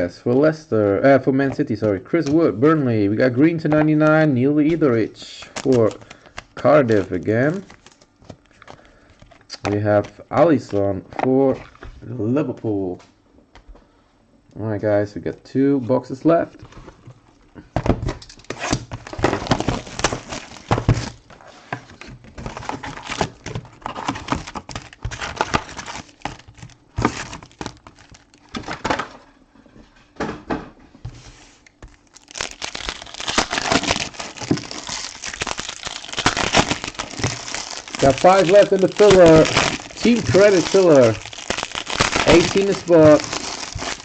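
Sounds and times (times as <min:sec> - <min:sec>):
plastic wrapping crinkling and tearing: 0:04.6 - 0:10.8, 0:18.2 - 0:28.9, 0:31.6 - 0:44.0.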